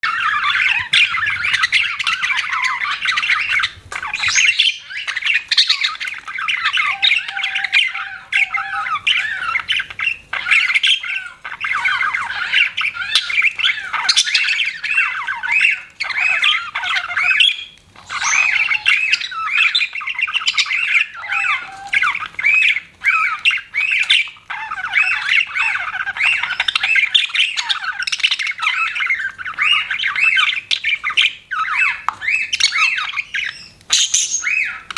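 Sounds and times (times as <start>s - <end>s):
budgies chattering and chirping: 0.0s - 34.9s.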